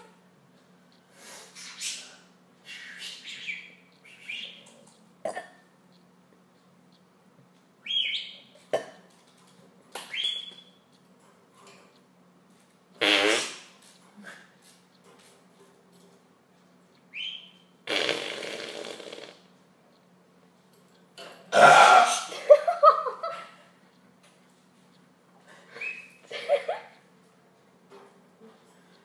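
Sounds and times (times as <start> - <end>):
budgerigar chirps and whistles: 2.7 - 4.6, 7.8 - 8.4, 10.1 - 10.8, 17.1 - 17.6, 25.8 - 26.2
fart noises: 13.0 - 13.8, 17.9 - 19.5.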